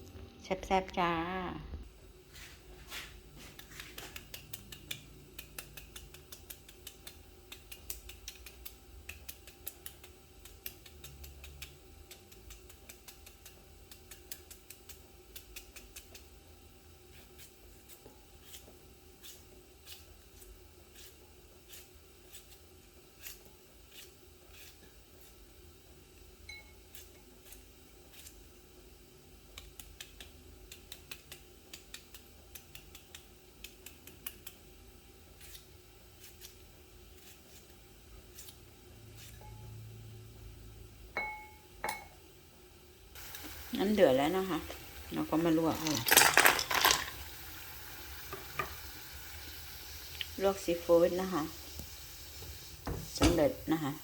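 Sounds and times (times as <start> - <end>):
faint steady hum: 0.0 - 54.0
snipping and clicking strokes: 3.5 - 16.3.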